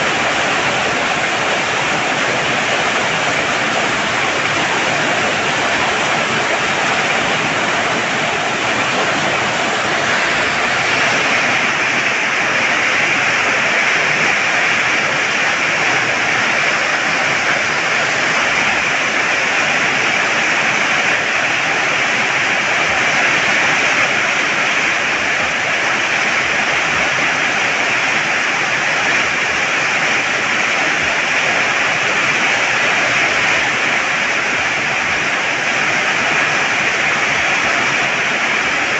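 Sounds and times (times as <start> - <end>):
heavy rain pouring: 0.0 - 38.9.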